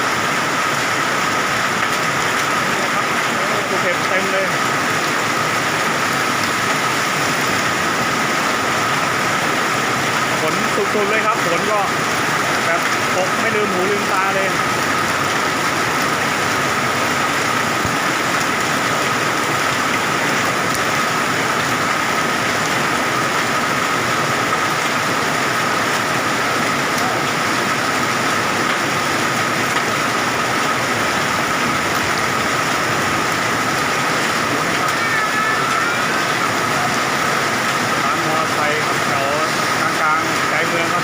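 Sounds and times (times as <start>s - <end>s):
torrential rain and hail: 0.0s - 41.0s
faint high tone: 34.8s - 36.9s.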